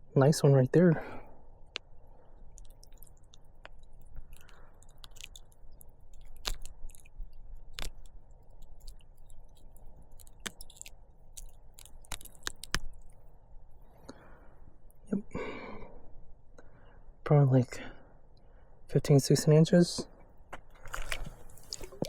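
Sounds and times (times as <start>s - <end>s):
rustling of close handling: 1.8s - 13.3s, 20.6s - 22.0s.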